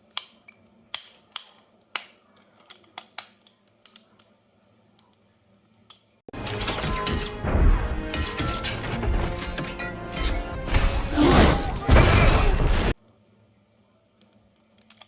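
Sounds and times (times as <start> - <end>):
loud dramatic music: 6.4 - 12.9
crashes and smashing impacts: 6.4 - 13.0.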